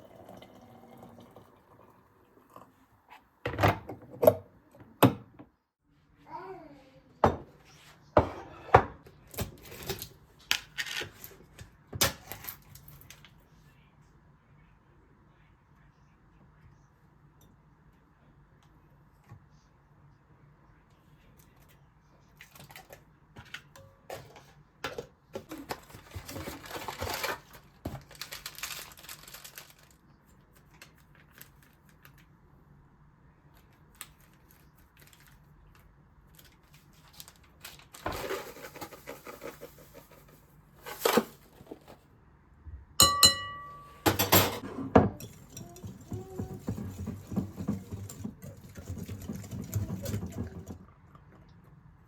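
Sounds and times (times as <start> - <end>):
rustling: 25.5 - 32.2
sharp ringing clink: 43.0 - 44.1
dishes and utensils clinking: 43.0 - 50.5.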